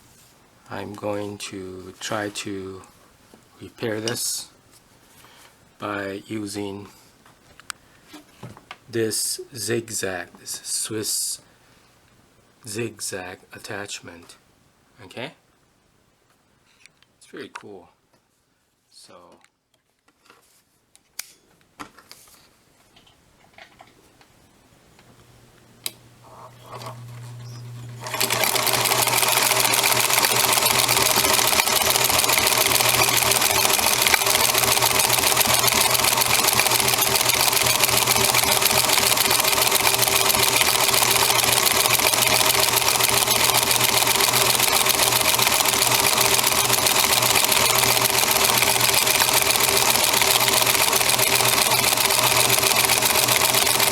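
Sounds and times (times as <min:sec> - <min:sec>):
motor hum: 0:26.9 - 0:53.9
sewing machine stitching: 0:27.8 - 0:53.9.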